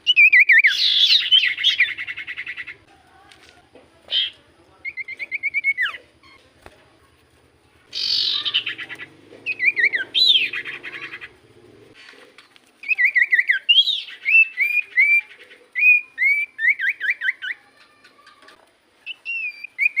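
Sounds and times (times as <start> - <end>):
bird chattering rattle: 7.9 - 13.4.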